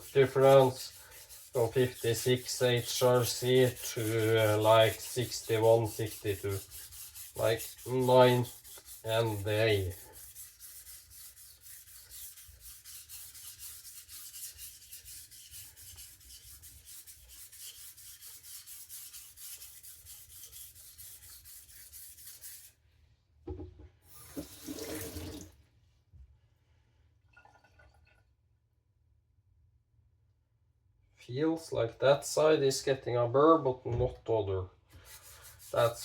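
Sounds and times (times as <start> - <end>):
knife scraping on whetstone: 0.0 - 22.7, 35.0 - 36.0.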